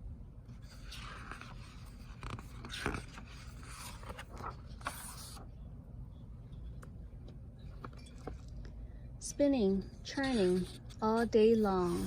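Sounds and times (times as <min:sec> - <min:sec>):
paper page rustling: 0:00.6 - 0:05.5.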